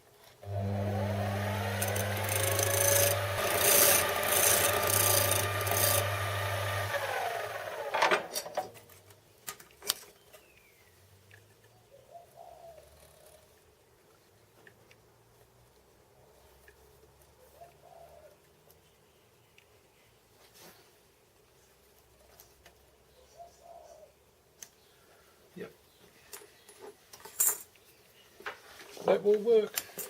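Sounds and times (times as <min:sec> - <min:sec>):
workshop machine whine: 0:00.4 - 0:08.8
wood sanding rasping: 0:00.6 - 0:07.7.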